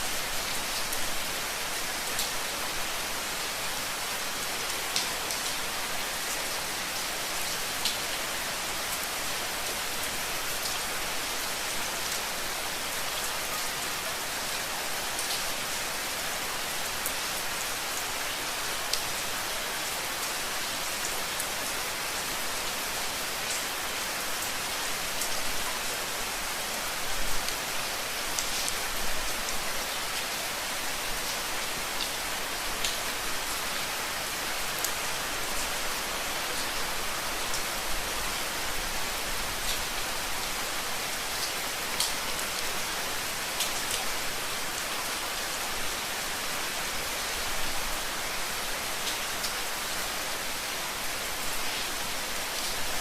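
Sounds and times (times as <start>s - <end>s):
rain pattering: 24.6s - 33.6s.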